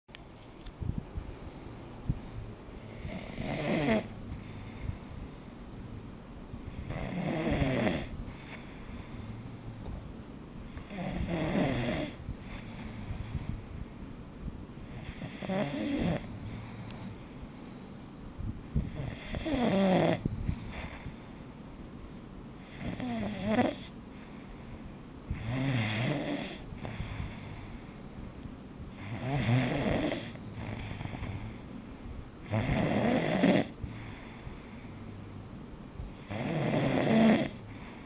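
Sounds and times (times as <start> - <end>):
person snoring: 2.9 - 5.1, 6.7 - 9.5, 10.7 - 13.4, 14.8 - 17.4, 18.8 - 21.1, 22.6 - 24.0, 25.3 - 27.6, 29.0 - 31.7, 32.4 - 34.4, 36.2 - 38.0.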